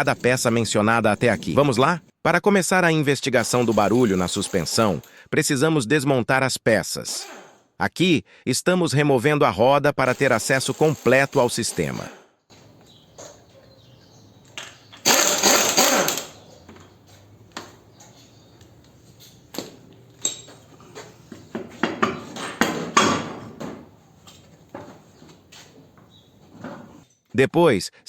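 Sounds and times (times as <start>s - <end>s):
impact wrench rattling: 3.4s - 5.1s, 10.1s - 13.5s, 14.4s - 25.0s
metallic tool clinks and knocks: 19.2s - 21.0s.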